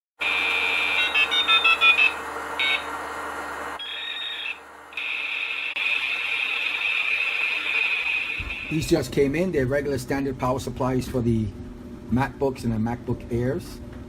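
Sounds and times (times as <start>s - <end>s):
steady high-pitched tone: 0.2s - 2.9s, 3.8s - 8.9s
short electronic beeps: 0.8s - 2.8s.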